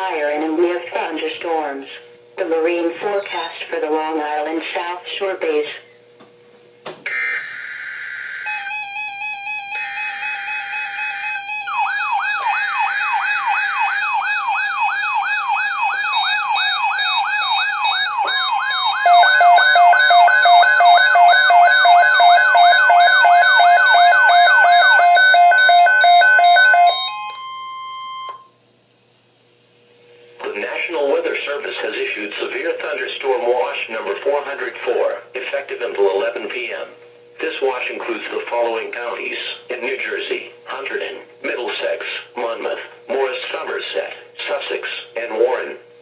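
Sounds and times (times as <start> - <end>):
screeching header data bursts: 3.0 - 6.0
fast wailing siren sweep: 7.1 - 27.9
alternating high-low tones: 7.2 - 28.4
steady alert tone: 15.9 - 28.4.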